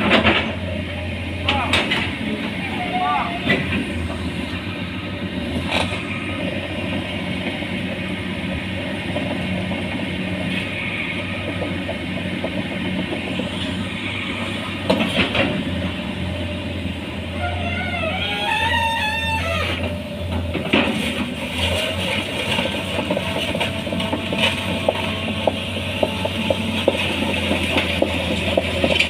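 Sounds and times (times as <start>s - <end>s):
excavator diesel engine running: 0.0s - 29.0s.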